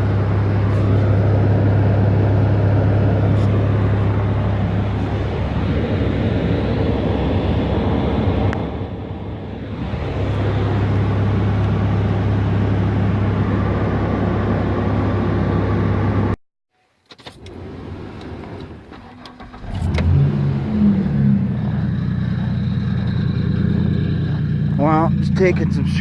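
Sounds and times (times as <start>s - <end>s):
truck engine running: 0.0s - 16.4s, 17.5s - 26.0s.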